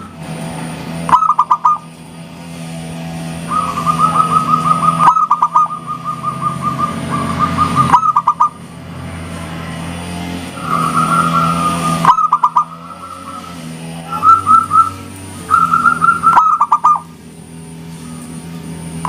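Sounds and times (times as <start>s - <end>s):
steady low hum: 0.0s - 19.0s
dove cooing: 1.1s - 1.9s, 3.5s - 8.6s, 10.8s - 17.2s.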